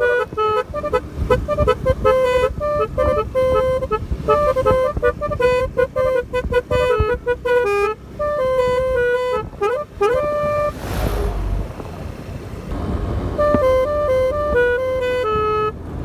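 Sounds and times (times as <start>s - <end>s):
horn playing a quick tune: 0.0s - 10.9s, 13.4s - 15.7s
brief rush of noise: 10.6s - 12.1s.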